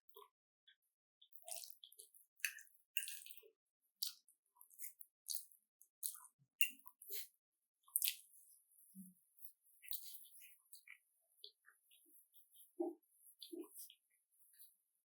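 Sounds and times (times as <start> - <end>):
chewing food with mouth smacks: 1.3 - 8.4, 9.8 - 14.6.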